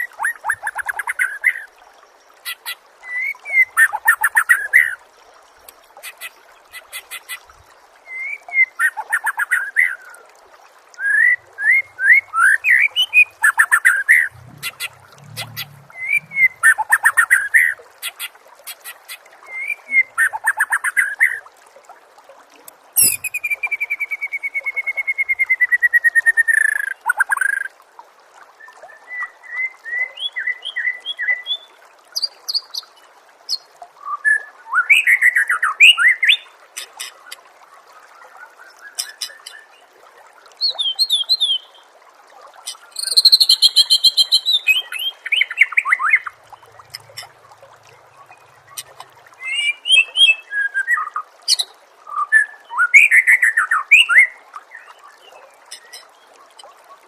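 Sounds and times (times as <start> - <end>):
songbird trills and whistles: 23.0 - 25.4.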